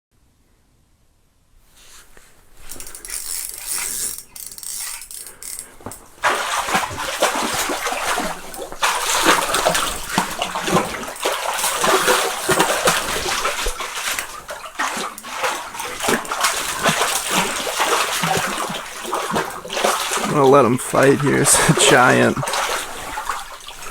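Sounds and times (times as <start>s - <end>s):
water splashing and rushing: 5.7s - 23.9s.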